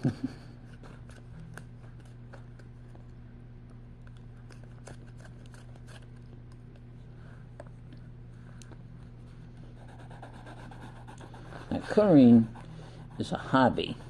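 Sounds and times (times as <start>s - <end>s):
pencil scratching on paper: 9.8s - 14.0s.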